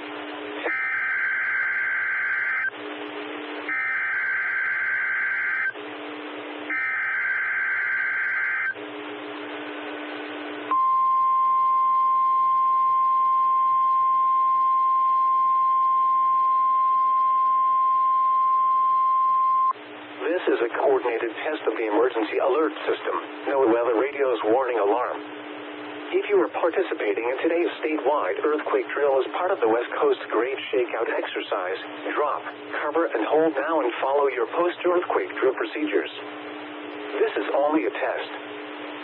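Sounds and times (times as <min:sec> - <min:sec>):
buzzy two-tone digital data bursts: 0:00.6 - 0:02.8, 0:03.7 - 0:05.8, 0:06.7 - 0:08.8
steady warning alarm tone: 0:00.6 - 0:02.8, 0:03.7 - 0:05.8, 0:06.7 - 0:08.8, 0:10.7 - 0:19.8.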